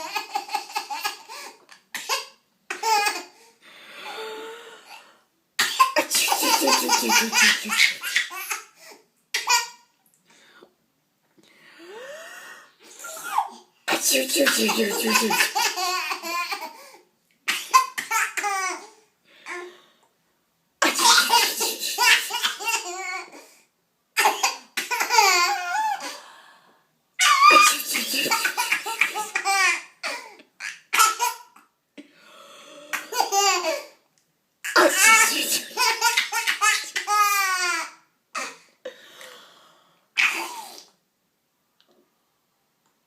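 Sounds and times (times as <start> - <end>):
adult fake sneeze: 5.7 - 8.0, 27.2 - 28.9, 34.7 - 35.8
toddler laughing: 6.0 - 8.7, 14.4 - 16.7, 20.8 - 23.2, 27.2 - 31.4.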